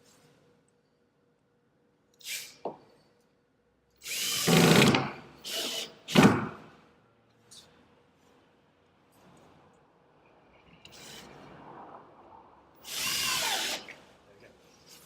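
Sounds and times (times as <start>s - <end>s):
power drill driving a screw: 4.0s - 6.3s, 12.8s - 14.0s.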